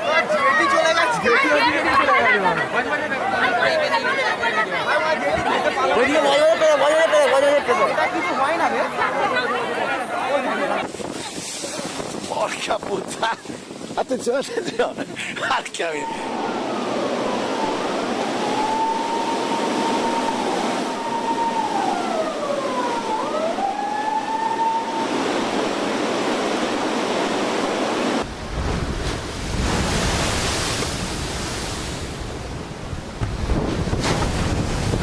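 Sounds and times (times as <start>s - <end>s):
rushing water: 0.0s - 35.0s
wind: 0.0s - 35.0s
siren wailing: 15.8s - 26.0s.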